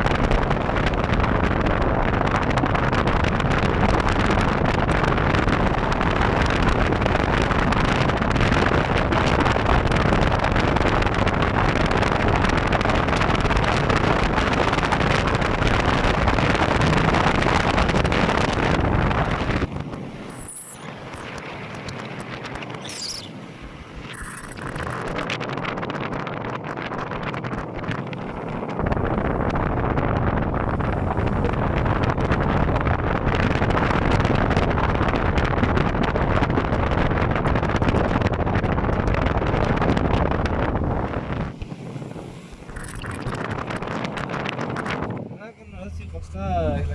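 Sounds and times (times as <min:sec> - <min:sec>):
moving vehicle rumble: 0:00.0 - 0:46.9
wind buffeting microphone: 0:00.0 - 0:46.9.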